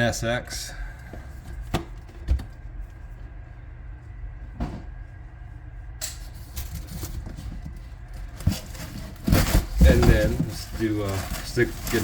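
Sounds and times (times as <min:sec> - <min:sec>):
low steady hum: 0:00.0 - 0:12.0
box and packing material rustling: 0:06.6 - 0:12.0.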